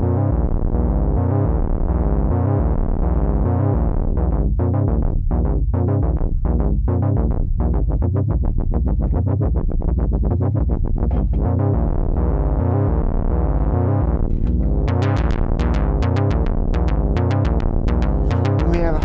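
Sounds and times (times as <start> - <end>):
low sustained synthesizer note: 10.6 - 19.0
synthesizer rapid repeating notes: 14.9 - 19.0.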